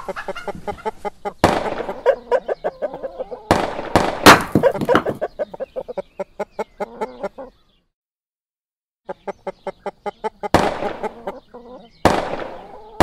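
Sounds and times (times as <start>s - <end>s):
chickens clucking: 0.0s - 7.8s, 9.1s - 13.0s
loud gunshot bangs: 1.4s - 2.0s, 3.5s - 5.0s, 10.5s - 11.1s, 12.0s - 12.7s.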